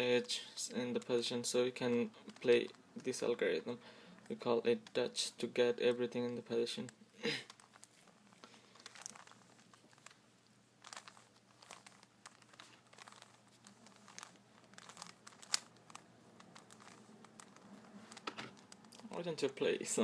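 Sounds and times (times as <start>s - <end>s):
puzzle cube clicking: 10.8s - 19.0s.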